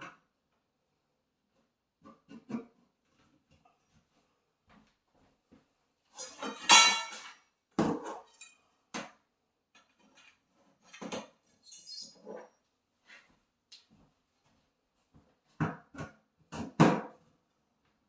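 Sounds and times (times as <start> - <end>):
metal poles clanking: 6.2 - 7.3.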